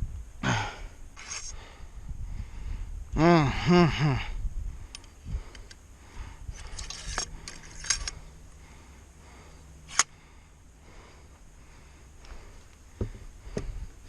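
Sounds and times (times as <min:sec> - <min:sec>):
rustling and scraping: 0:01.2 - 0:01.6, 0:06.5 - 0:08.3.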